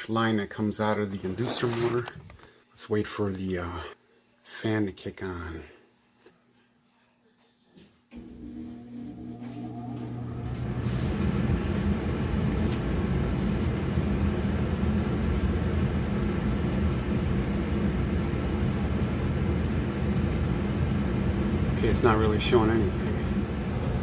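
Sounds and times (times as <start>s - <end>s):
furnace blower fan rushing: 8.2s - 24.0s.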